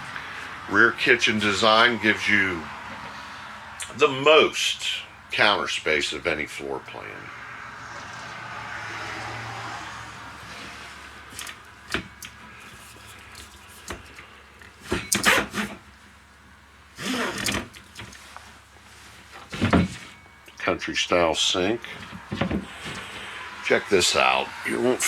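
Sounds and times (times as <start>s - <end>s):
drawers sliding clatter: 19.4s - 20.2s.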